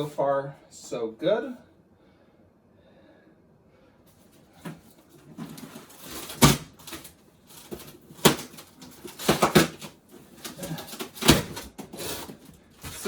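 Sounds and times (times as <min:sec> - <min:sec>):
packaging knocks and rustles: 0:04.3 - 0:13.0.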